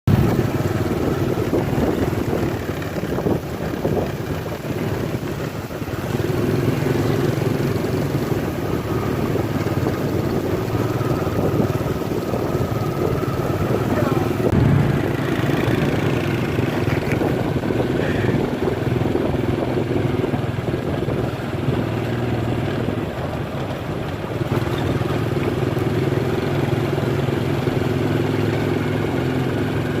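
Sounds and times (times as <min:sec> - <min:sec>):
wind noise: 0:00.1 - 0:27.5
motorcycle engine running: 0:00.1 - 0:30.0.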